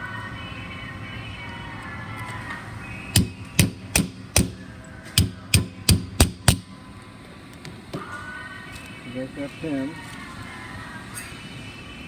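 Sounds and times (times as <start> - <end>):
hammer tapping metal pin: 3.2 - 6.8.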